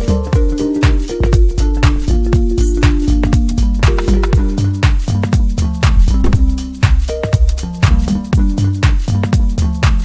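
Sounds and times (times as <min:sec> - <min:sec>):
kick drum: 0:00.0 - 0:10.0
electronic dance music: 0:05.7 - 0:09.0.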